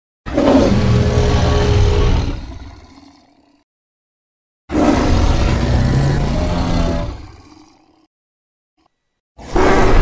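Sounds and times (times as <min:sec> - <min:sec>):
deep rough creature roar: 0:00.3 - 0:03.6, 0:04.7 - 0:08.1.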